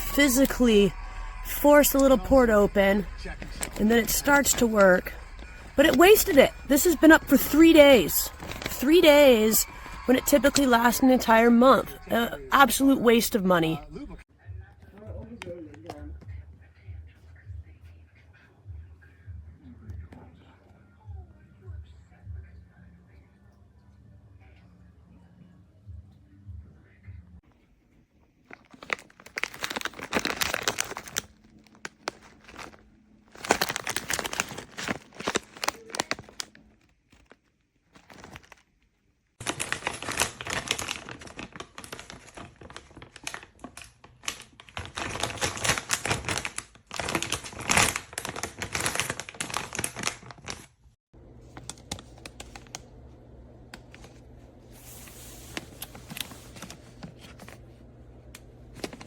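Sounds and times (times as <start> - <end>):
plastic bag crinkling: 0.0 - 13.8, 28.4 - 50.7, 51.3 - 52.9, 54.8 - 57.7, 58.7 - 59.0
steady low hum: 51.2 - 59.0.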